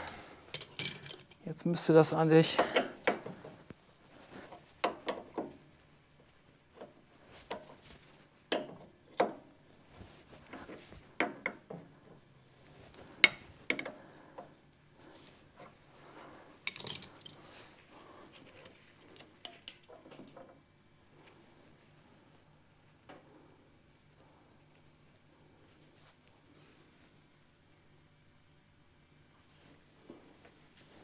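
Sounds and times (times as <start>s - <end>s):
metal tools clinking and knocking: 0.6s - 1.4s, 16.7s - 17.4s.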